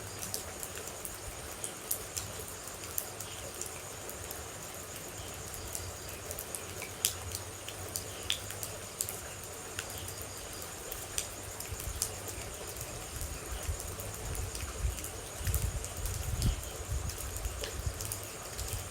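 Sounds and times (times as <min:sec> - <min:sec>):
rain falling: 0:00.0 - 0:18.9
water droplets dripping: 0:06.5 - 0:10.0.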